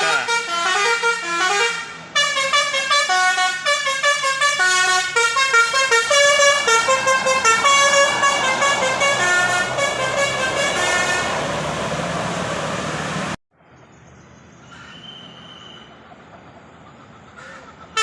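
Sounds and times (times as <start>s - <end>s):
multi-tone air horn tune: 0.0s - 11.9s
rushing noise: 5.7s - 13.4s.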